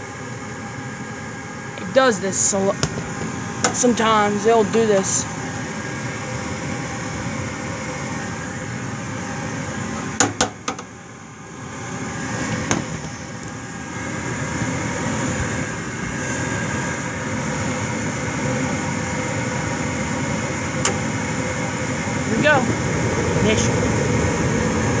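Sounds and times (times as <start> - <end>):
furnace motor hum: 0.0 - 25.0.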